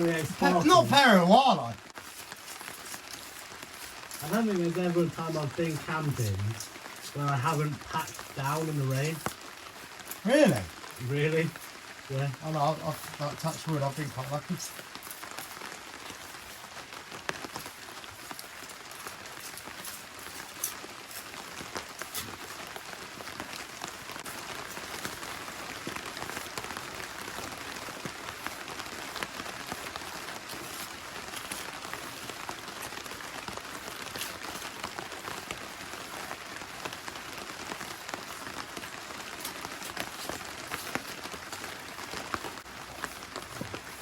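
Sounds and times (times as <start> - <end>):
water drips ticking: 0.0 - 26.8
heavy rain hissing: 0.0 - 44.0.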